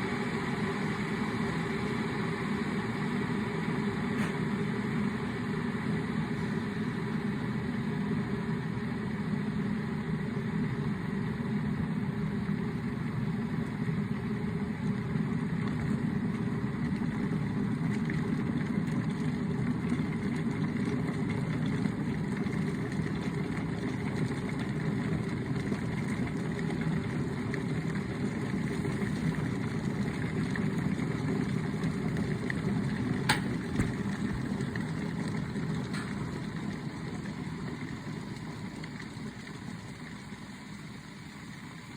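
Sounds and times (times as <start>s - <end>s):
kettle water boiling: 0.0s - 41.9s
kettle switch click: 33.3s - 34.0s.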